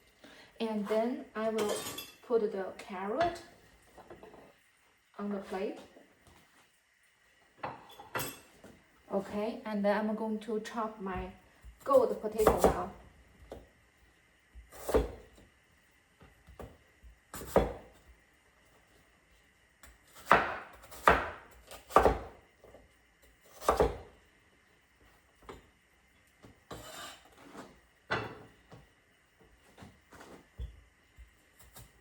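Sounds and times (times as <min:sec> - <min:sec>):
knife chopping on cutting board: 0:12.4 - 0:12.9, 0:14.8 - 0:15.3, 0:17.4 - 0:17.9, 0:19.8 - 0:22.4, 0:23.5 - 0:24.1.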